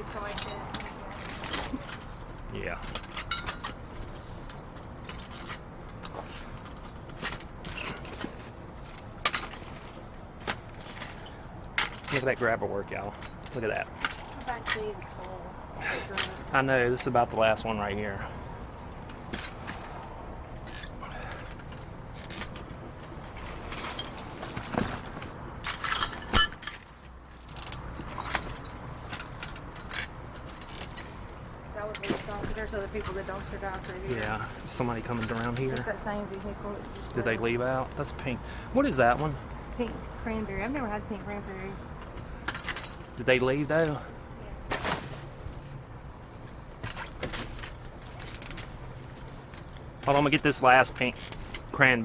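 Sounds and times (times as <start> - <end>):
bottles clinking and rattling: 2.8 - 12.4, 19.2 - 31.2.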